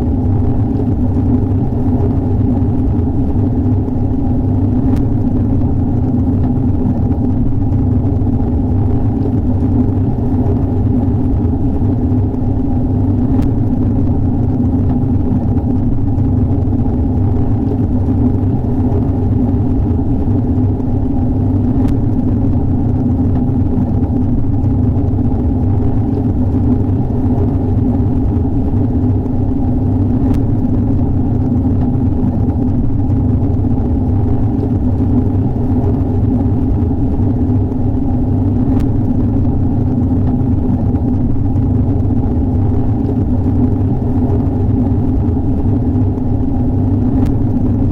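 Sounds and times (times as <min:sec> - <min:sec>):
faint ticks: 0:04.8 - 0:05.2, 0:13.2 - 0:14.1, 0:30.0 - 0:33.6, 0:38.4 - 0:41.2, 0:46.8 - 0:47.9.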